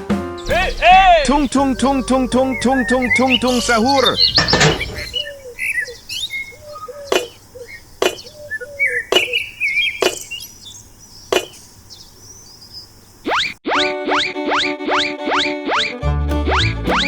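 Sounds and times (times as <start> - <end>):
short chirping calls: 0.4 - 15.9
sharp tapping: 7.1 - 7.4, 8.0 - 8.4, 9.1 - 9.4, 10.0 - 10.3, 11.3 - 11.6.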